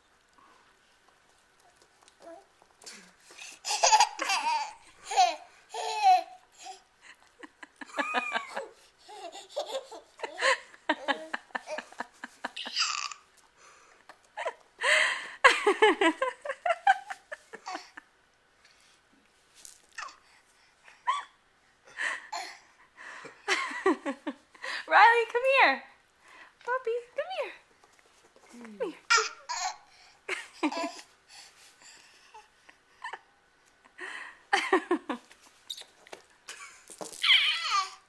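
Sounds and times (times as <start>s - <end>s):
baby laughing: 3.5s - 6.8s, 8.0s - 13.3s, 29.1s - 29.8s, 37.2s - 38.0s.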